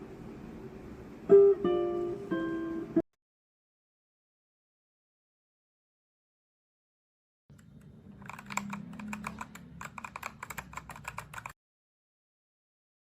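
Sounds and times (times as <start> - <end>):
mechanical keyboard typing: 7.5 - 11.6.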